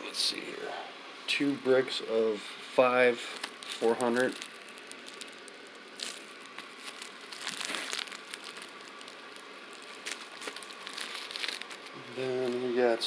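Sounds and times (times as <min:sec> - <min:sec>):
wrapping crinkling and rustling: 0:02.8 - 0:13.0.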